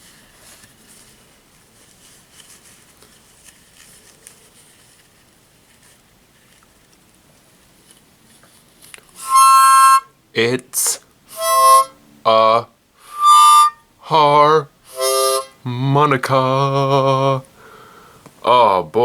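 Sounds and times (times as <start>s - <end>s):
harmonica chord: 9.2s - 10.1s, 11.3s - 12.0s, 13.0s - 15.6s.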